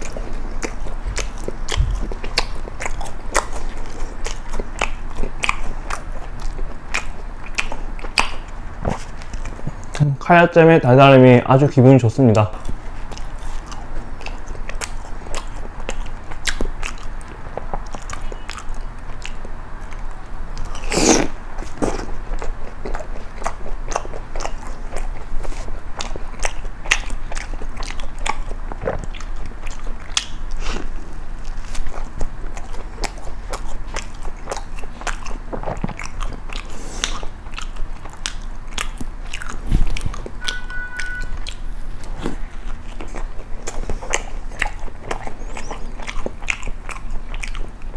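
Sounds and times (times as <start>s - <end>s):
crunchy biting and chewing: 0.0s - 10.1s, 12.6s - 47.9s.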